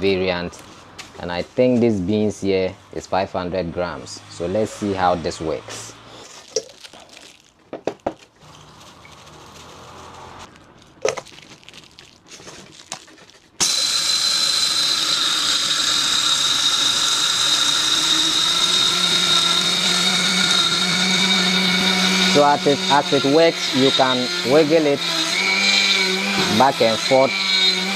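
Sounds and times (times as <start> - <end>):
handling knocks and clicks: 6.5 - 8.4
electric grinder grinding beans: 8.4 - 10.5, 13.6 - 27.9.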